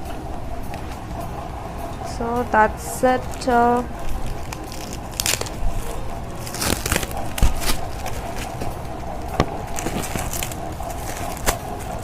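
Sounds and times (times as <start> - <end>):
packaging rustling: 3.2 - 12.0.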